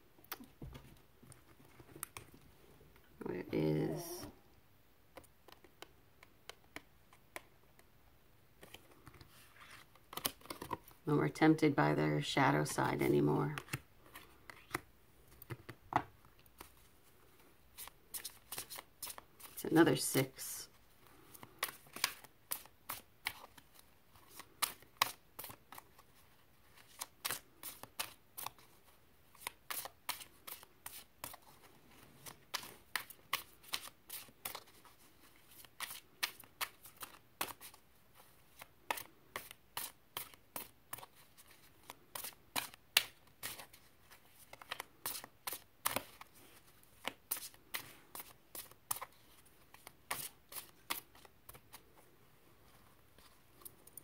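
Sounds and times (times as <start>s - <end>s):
cards shuffled by hand: 8.6s - 11.0s, 17.7s - 19.6s, 21.2s - 52.1s.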